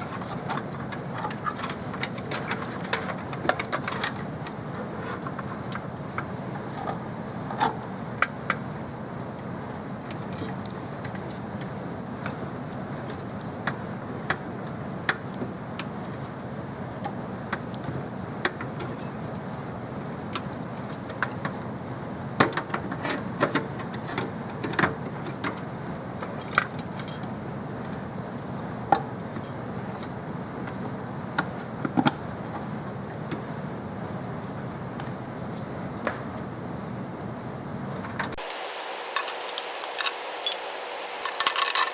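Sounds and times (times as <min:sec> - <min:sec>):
steady hiss: 0:38.3 - 0:41.9.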